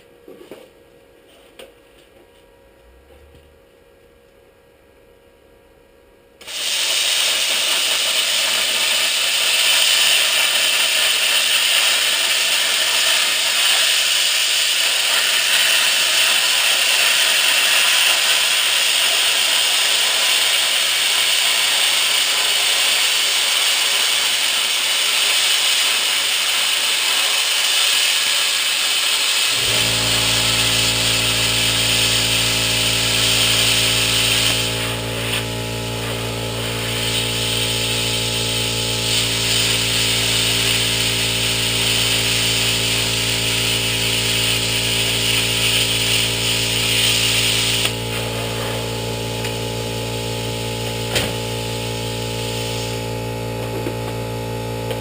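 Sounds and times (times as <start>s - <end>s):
low motor hum: 2.0s - 6.5s, 29.5s - 55.0s
power tool grinding sheet steel: 6.4s - 55.0s.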